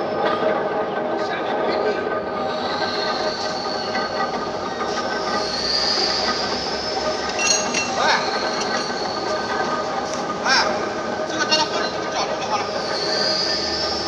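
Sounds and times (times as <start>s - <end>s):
high squeal: 2.4s - 14.0s
metal clinking: 7.3s - 9.0s.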